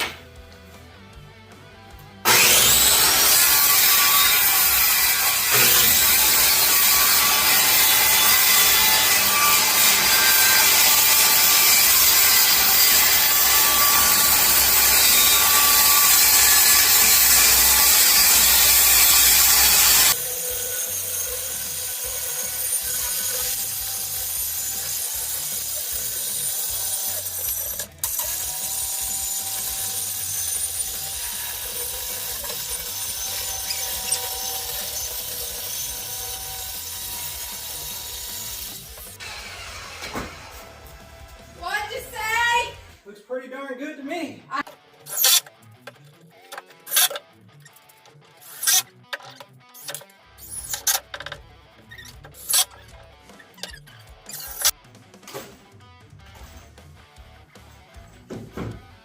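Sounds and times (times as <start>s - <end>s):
power tool working on wood: 2.2s - 41.2s, 48.4s - 48.9s, 51.9s - 54.7s.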